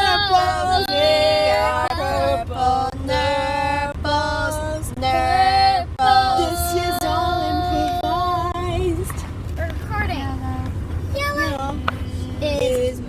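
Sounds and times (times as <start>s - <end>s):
young voices singing: 0.0s - 9.2s
steady low hum: 0.0s - 13.0s.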